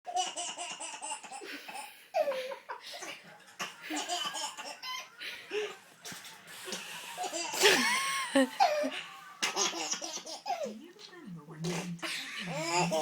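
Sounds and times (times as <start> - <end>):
person laughing: 7.3 - 9.0.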